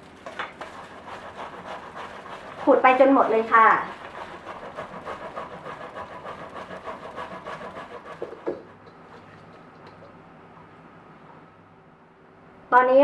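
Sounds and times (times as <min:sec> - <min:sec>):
root grated on a hand grater: 0:00.6 - 0:08.9.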